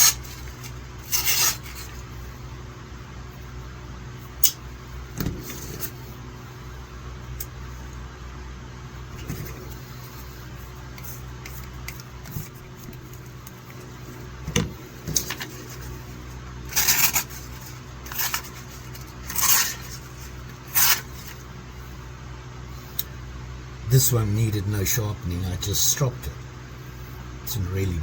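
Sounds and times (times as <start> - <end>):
knife blade scraping strokes: 0.0 - 2.1, 16.7 - 21.4
steady low hum: 0.0 - 28.0.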